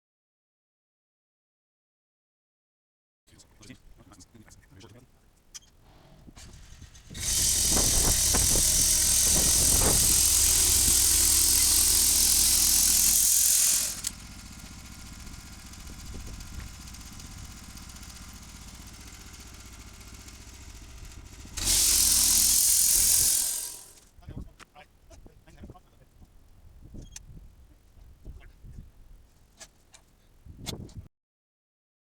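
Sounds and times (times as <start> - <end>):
saw cutting wood with hissing: 6.4 - 24.1
sawmill running: 6.4 - 24.1.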